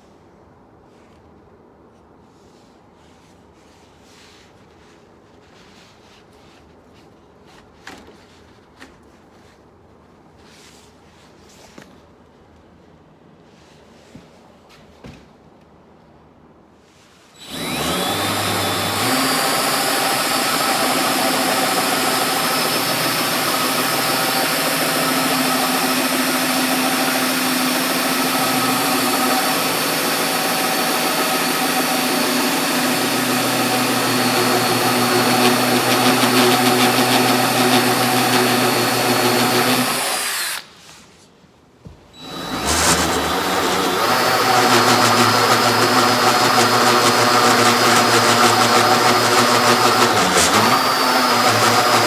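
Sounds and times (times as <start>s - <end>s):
power drill boring through wood: 17.4s - 40.7s, 42.2s - 52.0s.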